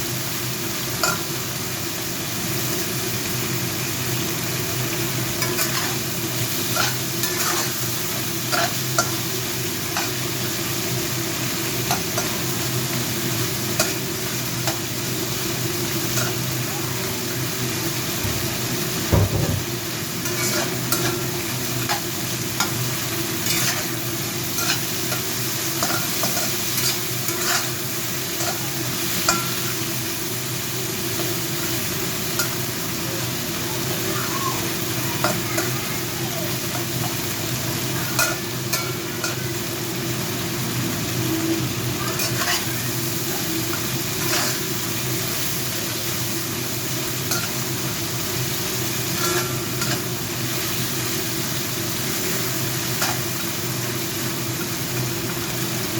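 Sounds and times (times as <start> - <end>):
chicken sizzling in hot oil: 0.0 - 55.9.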